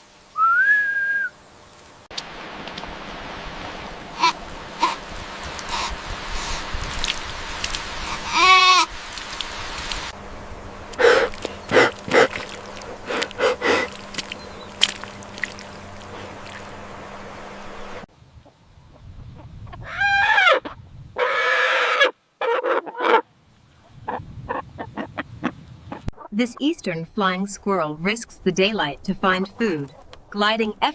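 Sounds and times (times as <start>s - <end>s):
low hum: 0.0s - 19.8s
farm animals bleating: 4.2s - 5.0s, 8.2s - 8.9s.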